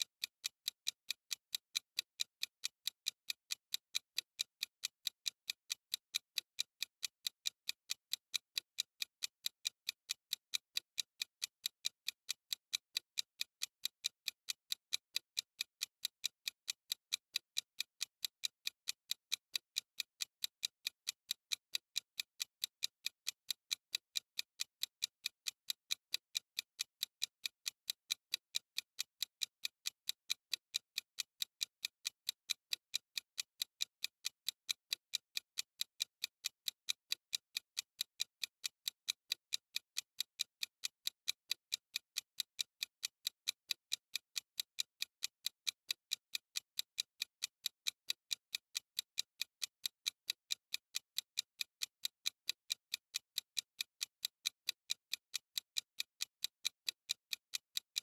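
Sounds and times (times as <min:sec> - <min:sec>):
clock ticking: 0:00.0 - 0:58.0.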